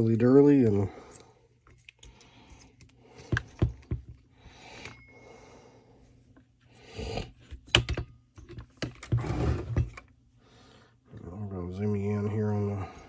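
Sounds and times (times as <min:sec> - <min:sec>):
handling clicks and knocks: 0:01.7 - 0:04.2, 0:07.5 - 0:09.2.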